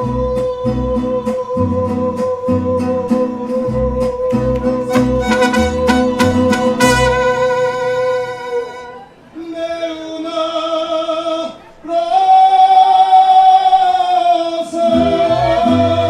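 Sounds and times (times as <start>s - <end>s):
voices singing long notes: 1.0s - 9.1s, 14.7s - 16.0s
low strings: 4.3s - 9.0s.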